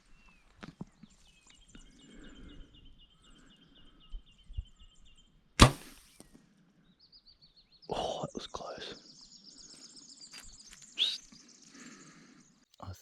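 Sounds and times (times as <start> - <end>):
bow string snap: 5.6 - 6.2.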